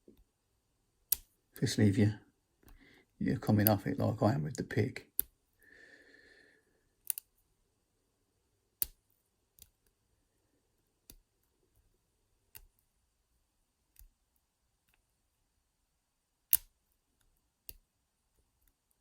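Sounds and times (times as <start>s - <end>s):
lock pick metallic clicks: 1.1s - 1.3s, 7.0s - 7.3s, 16.5s - 16.7s.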